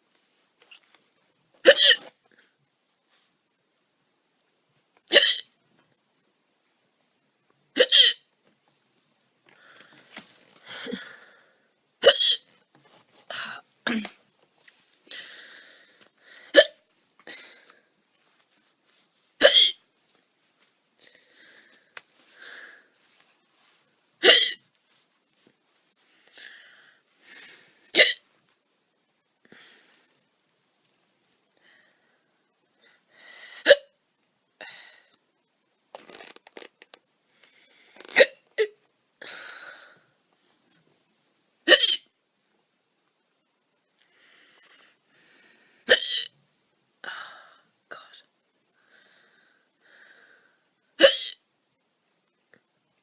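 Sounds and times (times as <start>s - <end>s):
woman hiccuping: 1.6s - 2.1s, 5.1s - 5.5s, 7.8s - 8.2s, 12.0s - 12.5s, 19.4s - 19.8s, 24.2s - 24.6s, 38.1s - 38.8s, 41.7s - 42.1s, 45.9s - 46.3s, 51.0s - 51.4s.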